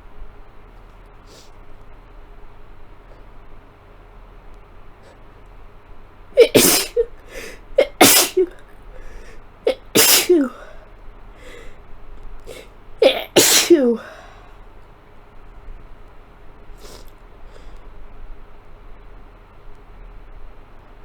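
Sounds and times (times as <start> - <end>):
person sneezing: 6.4 - 10.8, 12.5 - 14.3.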